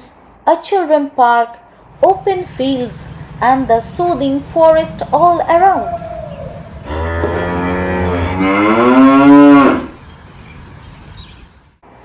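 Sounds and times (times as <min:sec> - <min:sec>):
cow mooing: 0:02.2 - 0:10.1.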